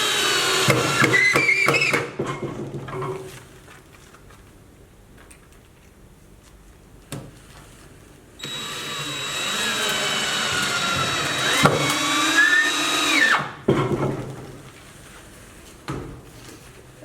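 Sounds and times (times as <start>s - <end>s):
cordless drill motor whining: 0.0s - 1.7s, 8.4s - 13.6s.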